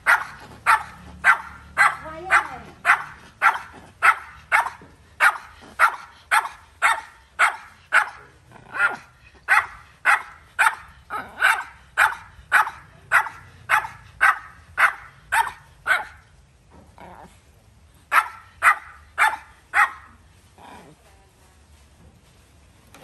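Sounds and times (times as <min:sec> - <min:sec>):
dog barking: 0:00.0 - 0:16.2, 0:18.1 - 0:20.2.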